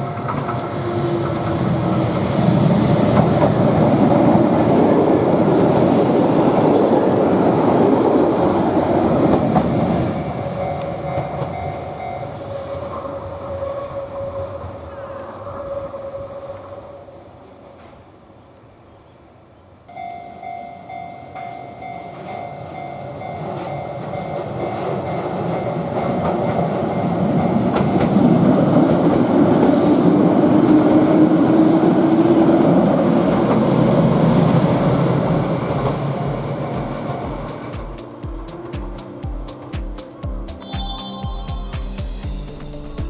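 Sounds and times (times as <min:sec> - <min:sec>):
level crossing warning bell: 0:00.0 - 0:04.0, 0:08.3 - 0:14.0, 0:19.9 - 0:29.6
train passing with whine: 0:00.0 - 0:43.0.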